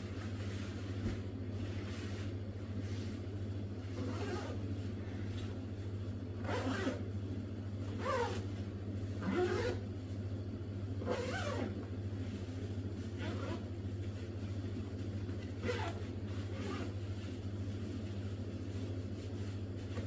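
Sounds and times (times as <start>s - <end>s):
steady low hum: 0.0s - 20.0s
zipper rasping: 4.0s - 4.6s, 6.4s - 7.0s, 7.8s - 8.5s, 9.2s - 9.8s, 11.0s - 11.7s, 13.2s - 13.7s, 15.6s - 17.0s.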